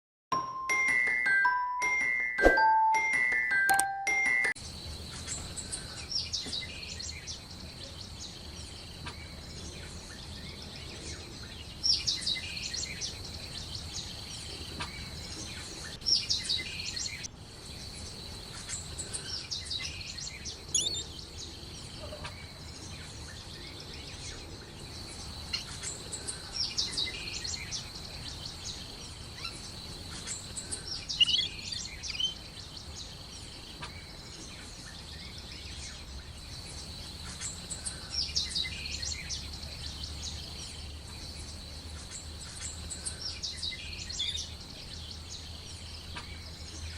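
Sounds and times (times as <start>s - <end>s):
birds chirping: 3.8s - 46.9s.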